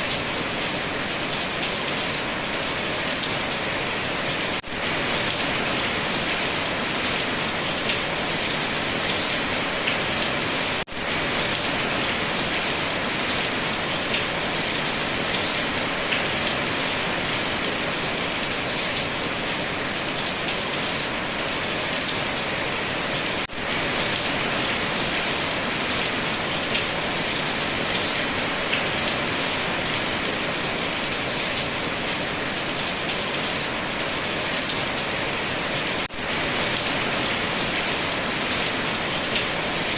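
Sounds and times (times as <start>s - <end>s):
dense rain falling: 0.0s - 39.9s.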